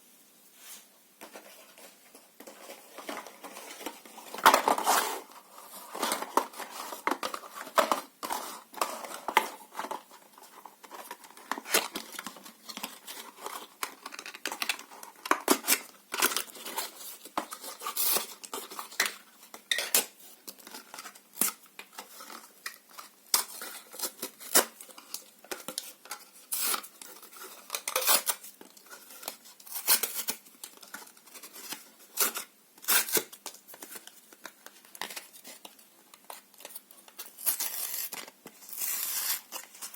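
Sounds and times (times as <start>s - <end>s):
paper and cardboard tearing: 37.4s - 39.9s.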